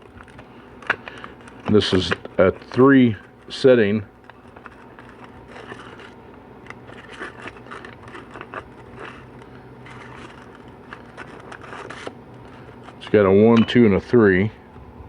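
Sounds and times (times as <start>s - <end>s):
faint low hum: 0.0s - 15.0s
metal parts scraping and clicking: 4.2s - 13.1s.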